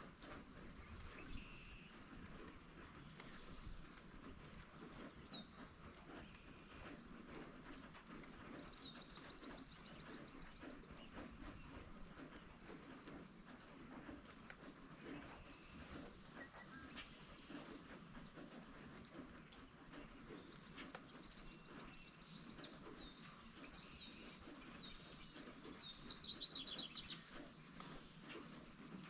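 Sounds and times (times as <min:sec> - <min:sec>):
light rain pattering: 0:00.0 - 0:29.0
songbird singing: 0:08.5 - 0:13.1, 0:20.4 - 0:29.0.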